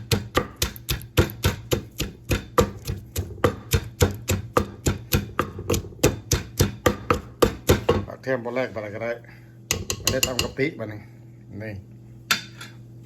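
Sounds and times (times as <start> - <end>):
pestle pounding in mortar: 0.0 - 8.1, 9.7 - 10.6.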